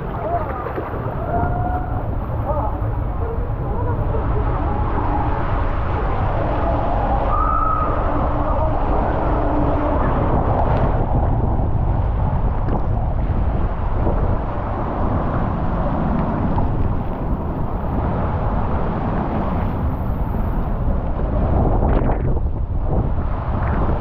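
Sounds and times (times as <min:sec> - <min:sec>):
water slide rushing: 0:00.0 - 0:12.2
wind buffeting microphone: 0:00.0 - 0:24.0.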